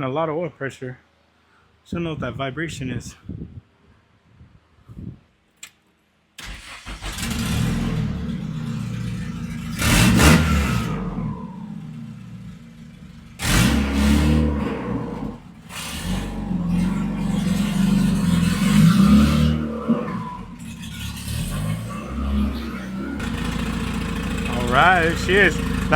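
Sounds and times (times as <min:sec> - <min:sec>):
engine starting and revving: 0:06.4 - 0:25.9
engine rough idle: 0:07.2 - 0:19.0, 0:20.2 - 0:25.9.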